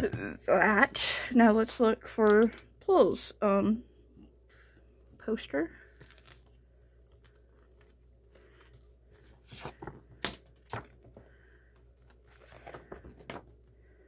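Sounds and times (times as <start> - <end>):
paper and packaging rustling: 5.9 - 11.3, 11.9 - 13.6.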